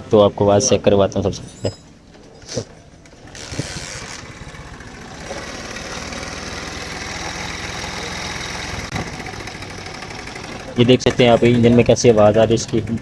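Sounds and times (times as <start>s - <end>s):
motorcycle engine idling: 3.1s - 13.0s.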